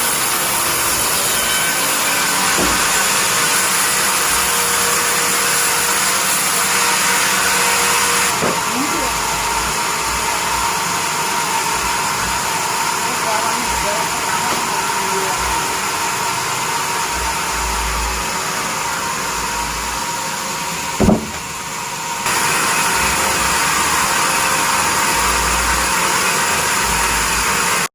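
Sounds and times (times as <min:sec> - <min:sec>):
bandsaw machine running: 0:00.0 - 0:27.9
short thump: 0:02.6 - 0:03.0, 0:21.0 - 0:21.5.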